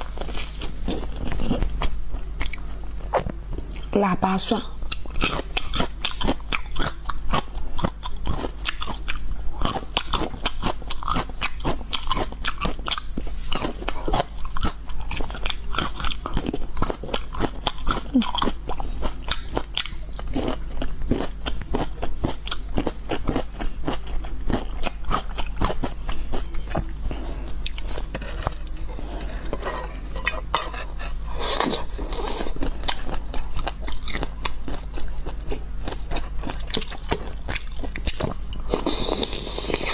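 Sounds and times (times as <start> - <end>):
crunchy chewing of food: 0.0 - 3.9, 4.8 - 39.9.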